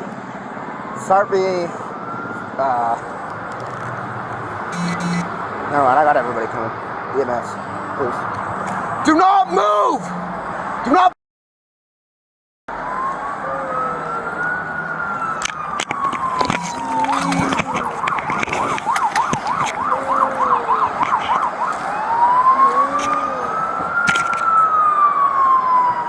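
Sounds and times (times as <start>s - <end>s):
emergency siren wail and yelp: 0.2s - 6.1s, 12.7s - 26.0s.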